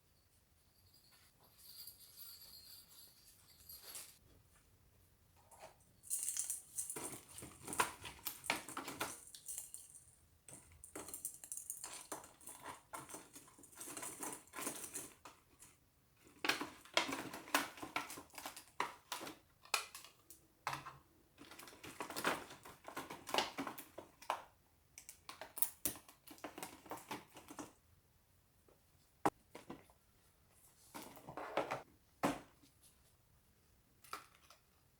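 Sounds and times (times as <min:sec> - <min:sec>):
small objects clicking and tapping: 0:06.0 - 0:15.3.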